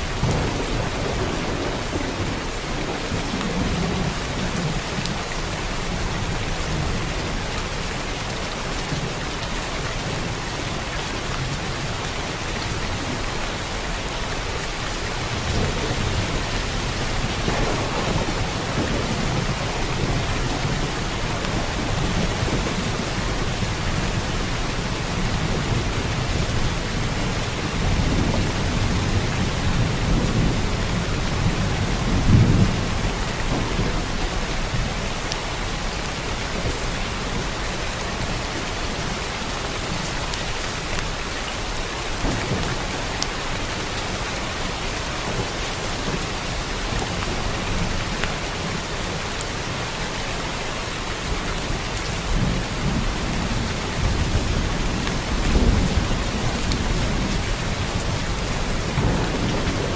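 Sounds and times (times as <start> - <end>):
thunder rumbling: 0.0 - 7.4, 14.5 - 35.9, 42.1 - 49.2, 51.4 - 59.9
heavy rain: 0.0 - 59.9.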